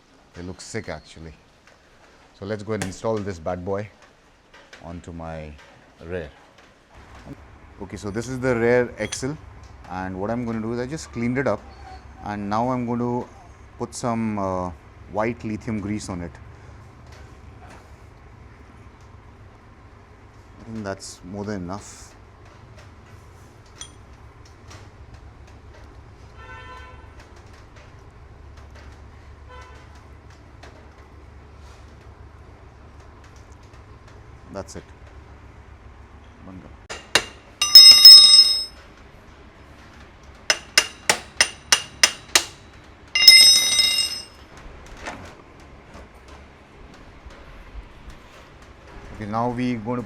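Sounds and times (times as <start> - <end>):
background traffic rumble: 0.0 - 50.0
metallic ringing and scraping: 8.2 - 9.4, 36.9 - 38.7, 40.5 - 42.6, 43.2 - 44.3
metal taps on metal: 9.0 - 9.3, 36.9 - 38.7, 40.5 - 42.6, 43.2 - 44.3.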